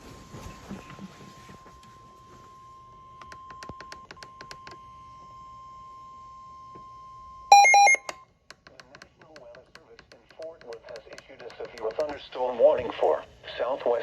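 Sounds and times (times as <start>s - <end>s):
loud electronic beeping: 7.5s - 8.1s
steady alarm tone: 7.5s - 8.2s.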